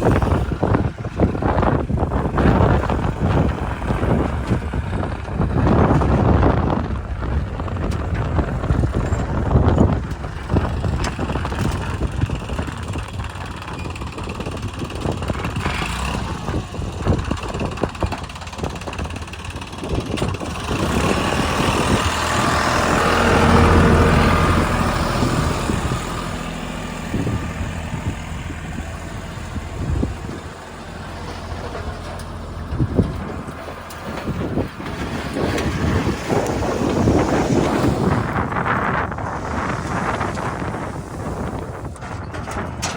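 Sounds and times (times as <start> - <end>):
diesel engine revving under load: 0.0 - 42.9
knocks and clatter: 26.9 - 42.9.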